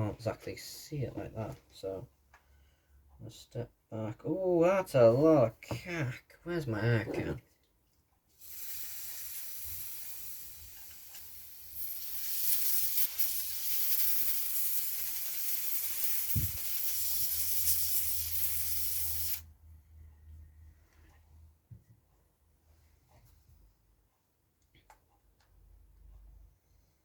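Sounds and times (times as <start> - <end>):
compressed air hissing: 8.4 - 19.5.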